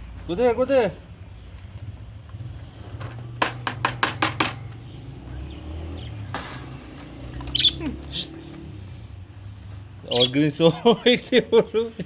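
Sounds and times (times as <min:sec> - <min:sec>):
budgie chirp: 0:07.4 - 0:09.0.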